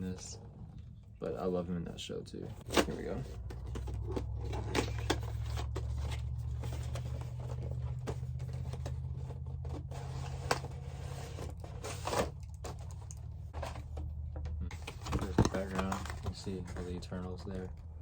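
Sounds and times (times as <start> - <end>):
toy packaging being opened: 2.7 - 13.8, 14.7 - 17.0.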